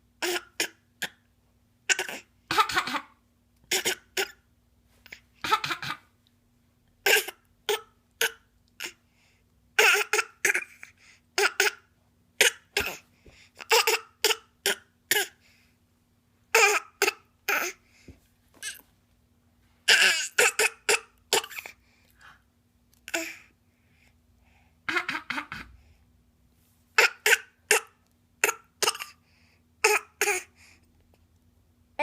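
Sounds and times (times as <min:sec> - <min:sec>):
child fake coughing: 0:01.9 - 0:04.4, 0:05.4 - 0:06.1, 0:09.8 - 0:10.8, 0:13.6 - 0:15.4, 0:19.9 - 0:21.8, 0:24.9 - 0:25.8, 0:27.0 - 0:29.2, 0:29.8 - 0:30.5.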